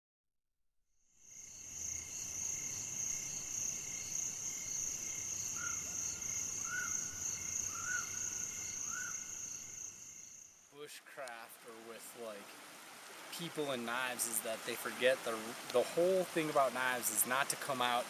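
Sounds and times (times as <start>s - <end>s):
insects trilling: 1.2s - 10.6s.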